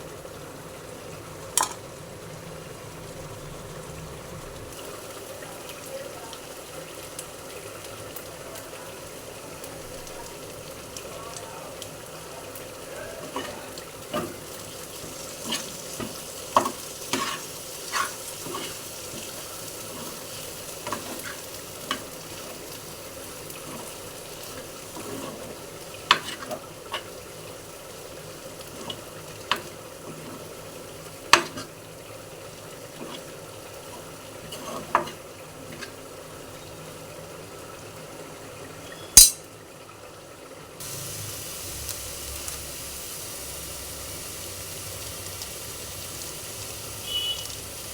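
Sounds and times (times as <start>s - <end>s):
food sizzling in a pan: 0.0s - 47.9s
spatula clinking on pan: 39.2s - 39.5s.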